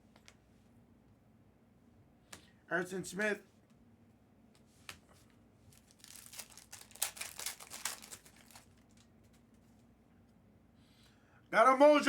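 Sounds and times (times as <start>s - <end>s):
plastic wrapper crinkling: 5.7s - 9.4s.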